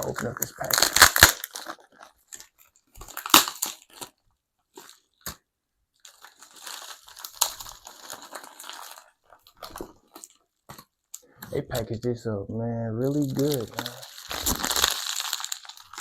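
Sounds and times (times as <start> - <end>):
sharp crackle: 0.0 - 5.4, 6.0 - 10.4, 13.0 - 16.0
packaging crinkling and crunching: 0.0 - 12.0, 13.0 - 16.0.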